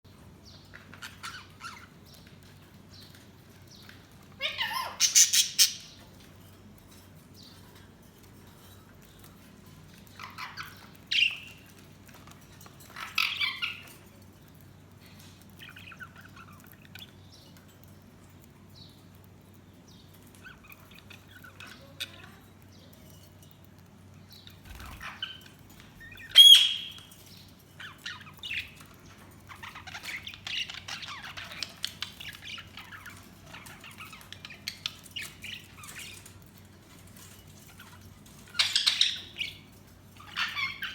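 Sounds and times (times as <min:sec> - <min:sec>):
budgies chattering: 0:00.5 - 0:06.2, 0:09.6 - 0:14.2, 0:15.0 - 0:18.0, 0:19.9 - 0:23.1, 0:24.2 - 0:40.9
budgies squawking and chirping: 0:00.6 - 0:02.5, 0:03.8 - 0:06.1, 0:10.0 - 0:12.2, 0:15.6 - 0:17.1, 0:24.6 - 0:27.1, 0:27.8 - 0:39.6, 0:40.2 - 0:40.9
loud whistled bird call: 0:26.4 - 0:27.0.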